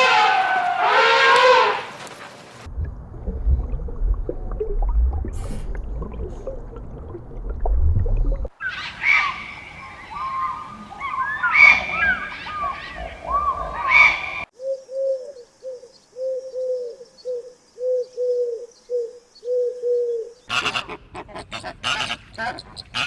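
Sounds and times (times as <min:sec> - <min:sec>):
low cooing notes: 0:02.7 - 0:08.5.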